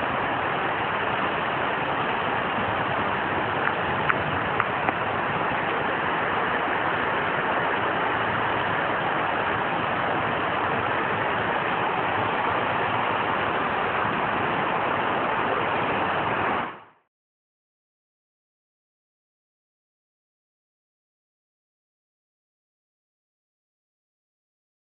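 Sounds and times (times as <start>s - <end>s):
heavy rain hissing: 0.0s - 17.0s.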